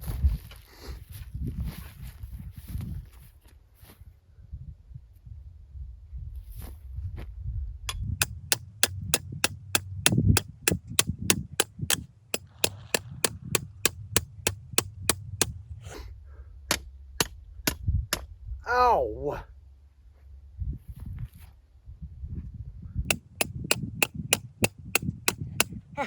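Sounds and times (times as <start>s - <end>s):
hammer striking fence post: 8.2s - 15.6s, 23.1s - 25.8s.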